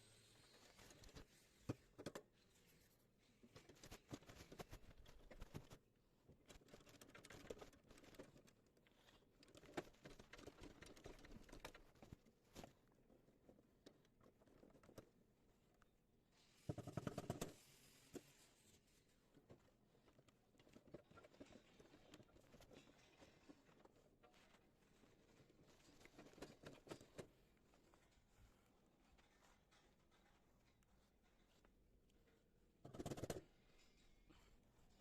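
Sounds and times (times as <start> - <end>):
clicks and light knocks of tools: 16.6 - 35.0.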